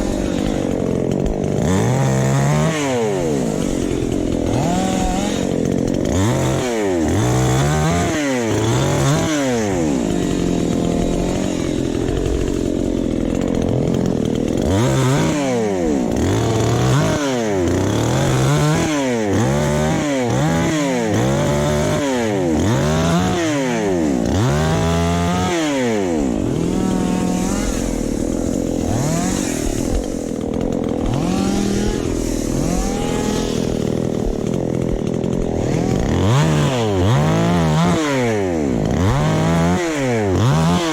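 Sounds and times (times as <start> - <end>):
chainsaw revving: 0.0 - 40.9.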